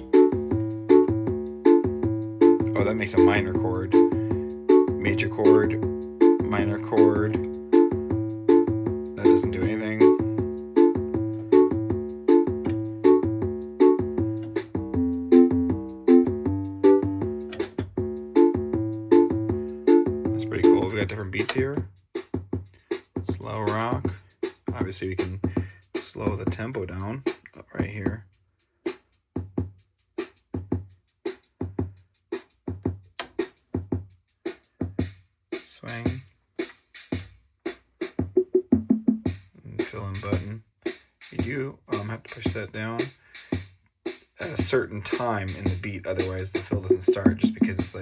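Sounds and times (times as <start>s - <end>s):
keyboard chords and bass line: 0.0s - 21.8s, 45.4s - 48.0s
keyboard preset drum beat: 0.0s - 48.0s.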